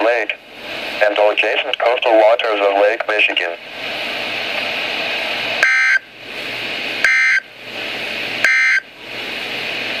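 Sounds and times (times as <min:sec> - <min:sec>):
radio hiss: 0:00.0 - 0:06.0
digital data tone bursts: 0:05.6 - 0:06.0, 0:07.0 - 0:07.4, 0:08.4 - 0:08.8.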